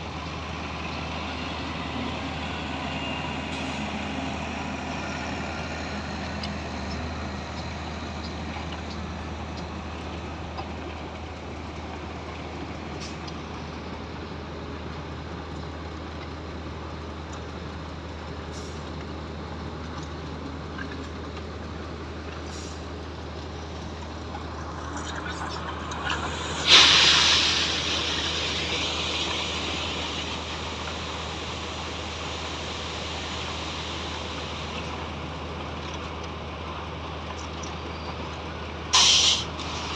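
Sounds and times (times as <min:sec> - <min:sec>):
diesel engines running: 0:00.0 - 0:39.9
air brake hiss: 0:22.5 - 0:22.9, 0:26.3 - 0:30.4, 0:38.9 - 0:39.9.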